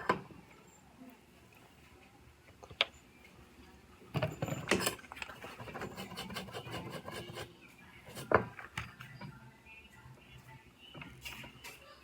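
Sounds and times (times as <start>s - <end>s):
hand tool scraping circuit board: 4.6s - 8.4s.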